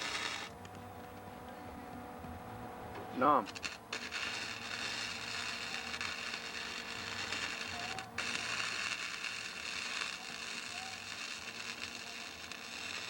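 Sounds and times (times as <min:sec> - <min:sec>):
electric arc welding crackling hiss: 0:00.0 - 0:00.9, 0:03.1 - 0:13.0.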